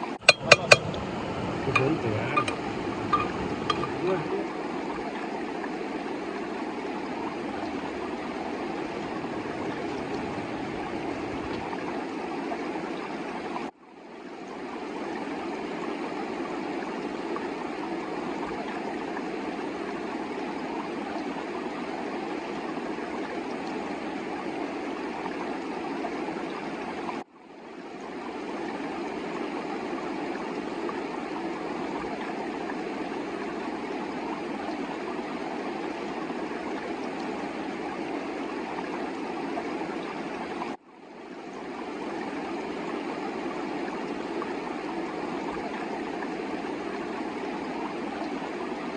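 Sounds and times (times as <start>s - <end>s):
fast-flowing river water rushing: 0.0s - 12.2s.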